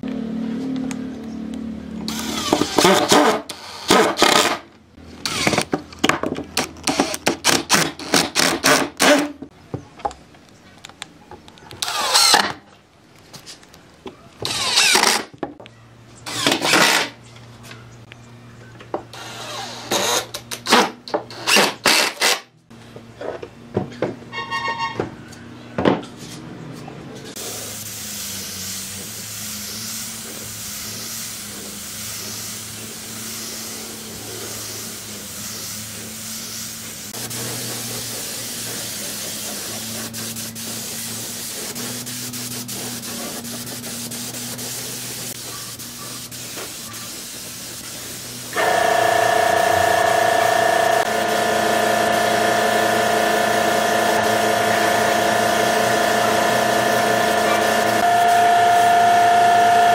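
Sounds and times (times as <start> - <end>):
power tool bursts: 11.8 - 12.5, 14.4 - 15.3, 16.3 - 17.2, 48.5 - 59.9.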